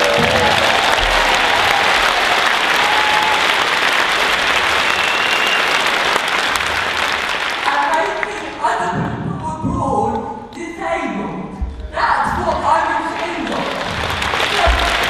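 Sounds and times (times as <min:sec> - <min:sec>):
crowd applauding: 0:00.0 - 0:08.6, 0:13.0 - 0:15.0.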